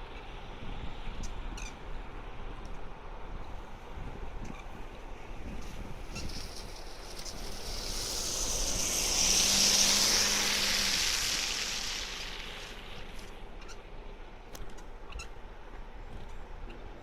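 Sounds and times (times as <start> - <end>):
tyre and road hiss: 3.4 - 17.0.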